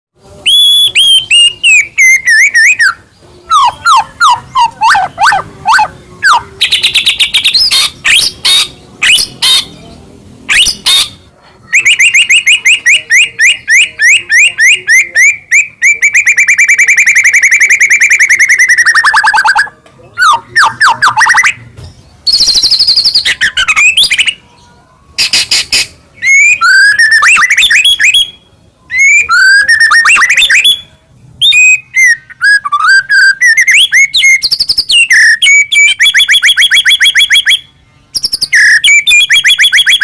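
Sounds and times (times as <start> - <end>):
bird singing varied song: 0.2 - 40.0.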